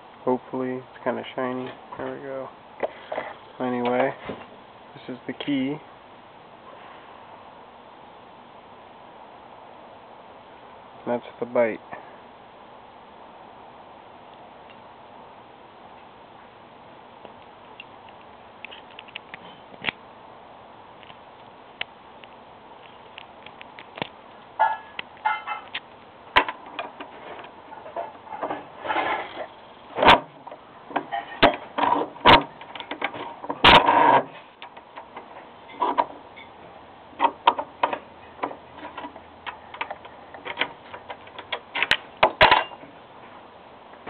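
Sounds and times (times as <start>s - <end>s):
metal clicks and rattles: 23.2s - 36.5s, 37.2s - 42.9s.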